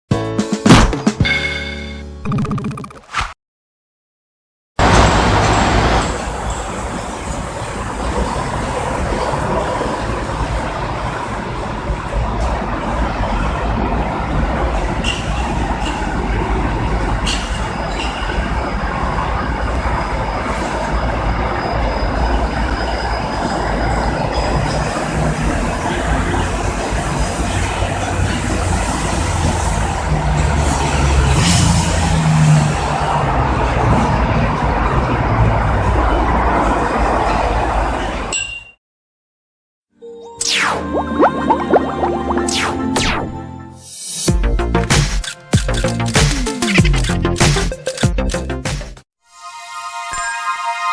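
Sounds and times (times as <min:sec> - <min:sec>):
road traffic rumble: 0:24.5 - 0:38.3.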